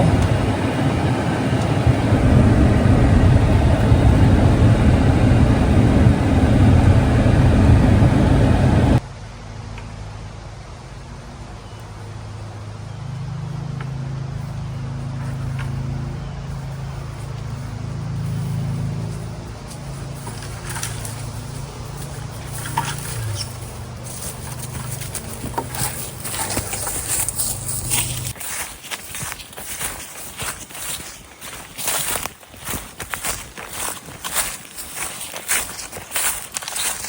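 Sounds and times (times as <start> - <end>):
loud rumbling vehicle noise: 0.0 - 28.4
low engine hum: 0.0 - 28.5.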